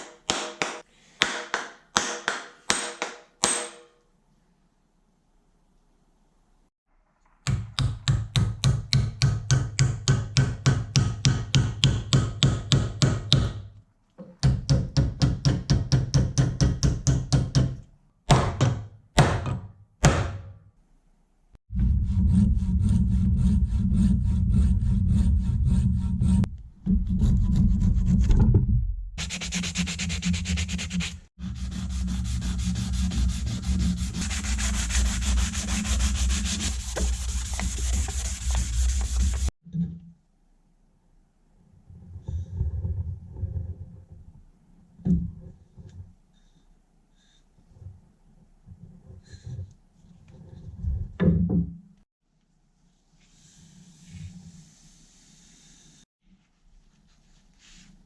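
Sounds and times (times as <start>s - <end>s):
low steady hum: 21.7s - 27.6s
continuous sanding: 22.2s - 26.5s, 29.2s - 39.6s
rasping strokes on wood: 29.2s - 39.5s.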